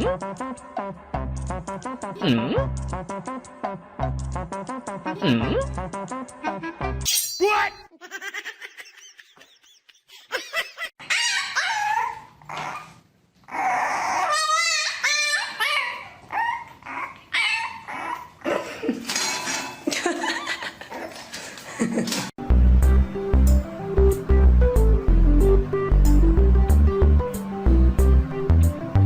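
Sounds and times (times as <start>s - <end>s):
pet animal whining and yelping: 11.0s - 18.4s.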